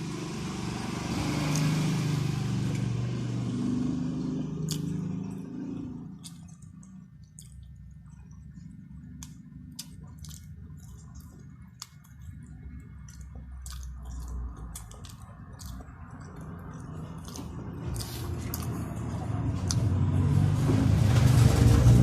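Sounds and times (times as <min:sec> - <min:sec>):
wet chewing and mouth smacks: 0:04.6 - 0:05.5, 0:06.1 - 0:19.9.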